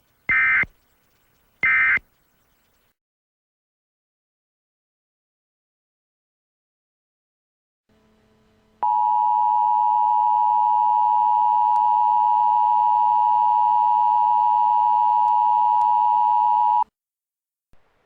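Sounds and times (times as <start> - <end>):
two-tone electronic alarm: 0.3 - 0.8, 1.6 - 2.7.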